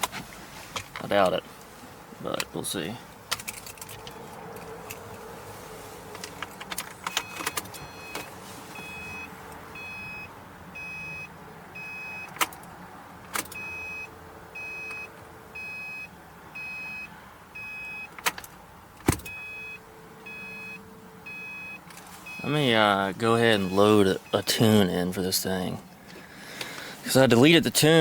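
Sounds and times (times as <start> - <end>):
car warning chime beeping: 7.0 - 12.5, 13.4 - 18.2, 19.2 - 25.6.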